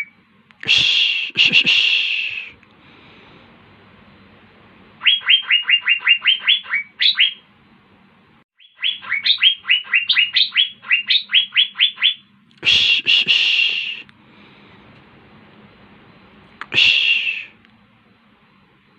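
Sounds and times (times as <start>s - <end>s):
bird whistling rapid descending notes: 5.0s - 7.4s, 8.6s - 12.2s.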